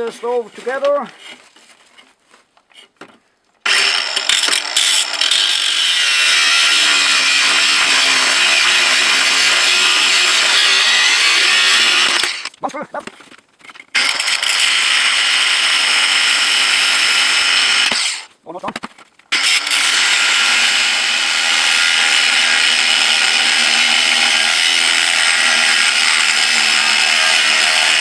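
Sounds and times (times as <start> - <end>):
cut-off blade grinding metal: 3.6 - 12.5, 14.0 - 18.3, 19.3 - 28.0.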